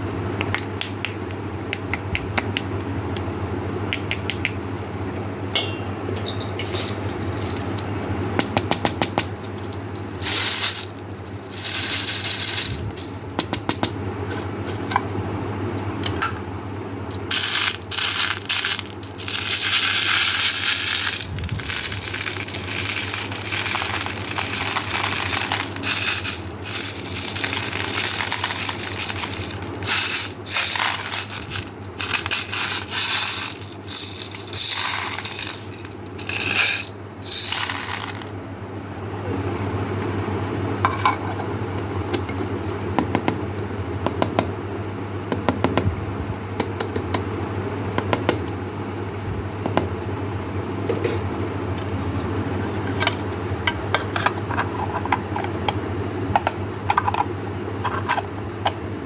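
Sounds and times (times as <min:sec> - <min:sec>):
steady low hum: 0:00.0 - 0:46.6
hard candies rattling: 0:06.6 - 0:08.0, 0:09.2 - 0:13.4, 0:17.1 - 0:38.4.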